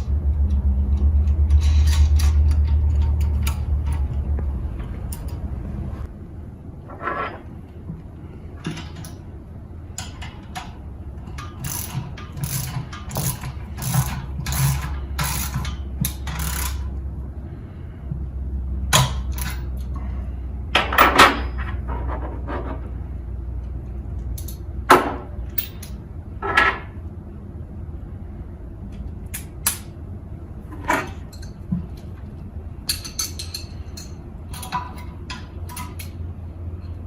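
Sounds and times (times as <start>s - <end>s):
ratchet wrench rasping: 11.4s - 16.9s.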